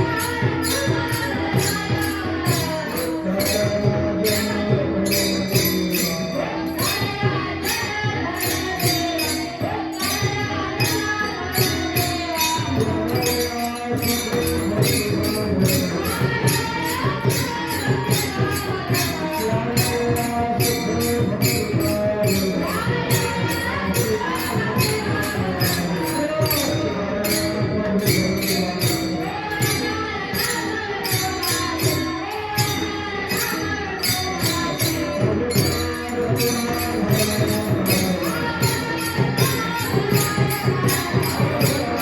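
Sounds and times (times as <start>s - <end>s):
man singing: 0.0s - 42.0s
small hand cymbals: 0.0s - 42.0s
drum beat: 33.4s - 42.0s.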